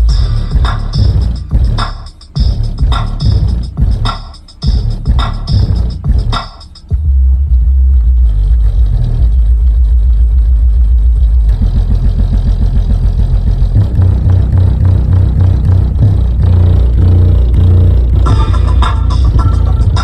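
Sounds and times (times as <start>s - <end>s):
bass-heavy music from subwoofers: 0.0s - 10.0s, 10.6s - 20.0s.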